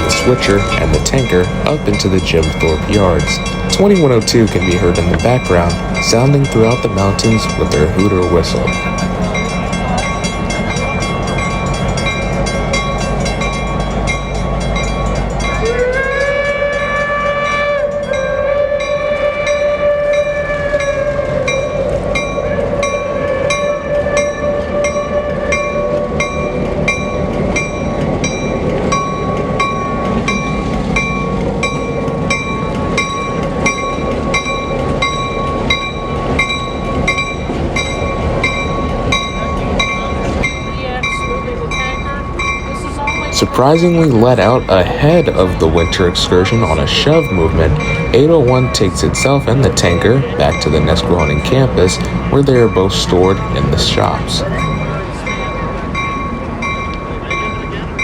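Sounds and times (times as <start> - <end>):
distant steam whistle: 0.0 - 10.3, 15.4 - 26.2
locomotive running: 0.0 - 58.0
wheels clicking over rail joints: 0.0 - 58.0.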